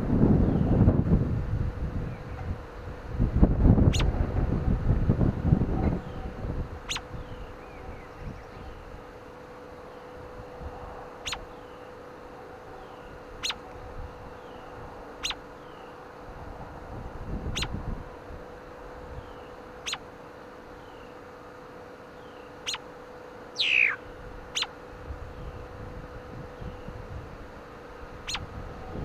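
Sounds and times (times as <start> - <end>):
wind rumbling on microphone: 0.0 - 9.1, 12.7 - 15.5, 16.2 - 19.4, 23.6 - 29.0
songbird chip notes: 3.8 - 4.1, 5.8 - 16.1, 17.5 - 17.8, 18.5 - 25.8, 28.2 - 28.6
faint falling bird notes: 23.6 - 24.7
loud falling bird call: 23.6 - 24.7.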